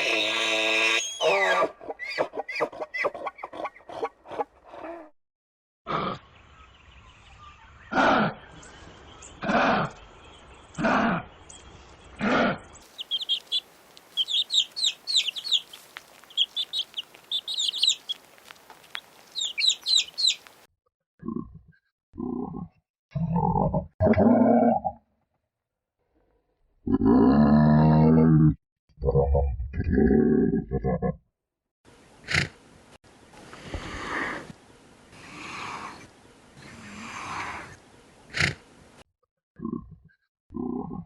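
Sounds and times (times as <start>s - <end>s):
bird singing high chirps: 0.0s - 1.6s, 12.9s - 18.2s, 18.9s - 20.5s
loud animal calls: 0.0s - 4.0s, 12.2s - 20.6s
animal grunts: 9.4s - 10.0s, 10.8s - 11.3s, 12.2s - 12.8s, 36.7s - 38.6s.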